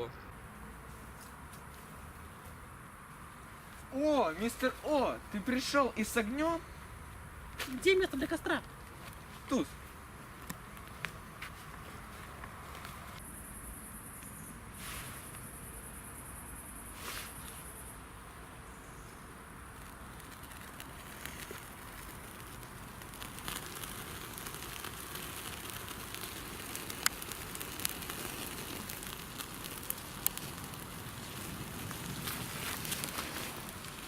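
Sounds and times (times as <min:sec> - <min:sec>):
campfire crackling: 0:00.6 - 0:34.0
sharp pops of fire: 0:19.7 - 0:34.0.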